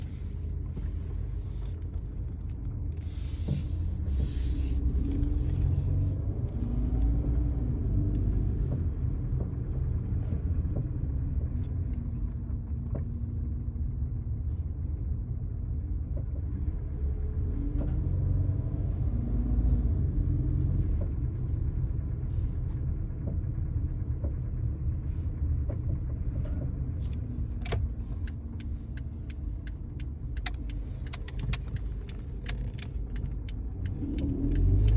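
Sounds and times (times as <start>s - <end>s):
car engine rumbling: 0.0s - 34.9s.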